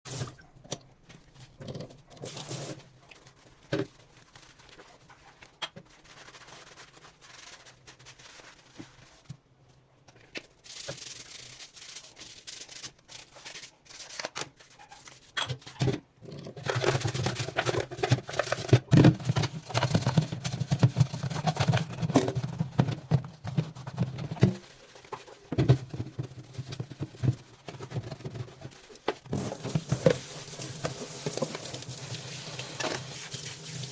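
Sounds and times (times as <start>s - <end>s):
clatter and scrubbing: 14.8s - 33.9s.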